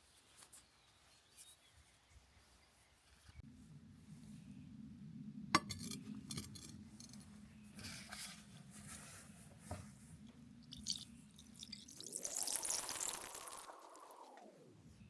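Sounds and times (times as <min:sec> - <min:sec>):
low steady hum: 0:03.4 - 0:15.0.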